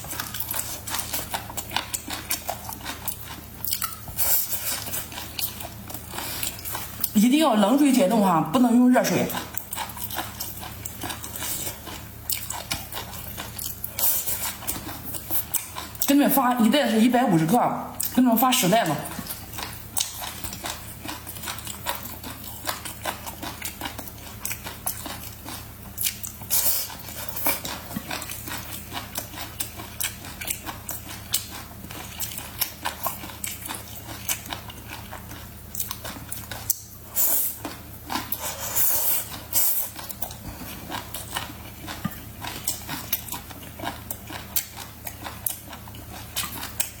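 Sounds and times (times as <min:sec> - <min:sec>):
crunchy chewing: 0:00.0 - 0:07.2, 0:09.3 - 0:16.1, 0:19.1 - 0:47.0.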